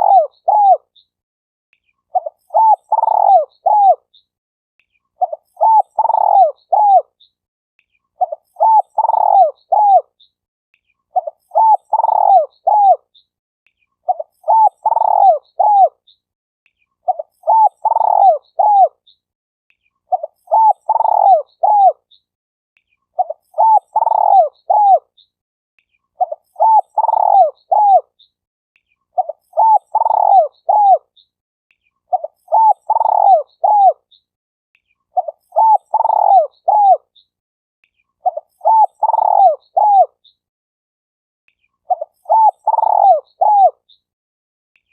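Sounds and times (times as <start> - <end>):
dove cooing: 0.0 - 0.9, 2.2 - 4.0, 5.2 - 7.1, 8.2 - 10.1, 11.2 - 13.0, 14.1 - 16.0, 17.1 - 19.0, 20.1 - 22.0, 23.2 - 25.1, 26.2 - 28.1, 29.2 - 31.0, 32.1 - 34.0, 35.2 - 37.0, 38.2 - 40.2, 41.9 - 43.8.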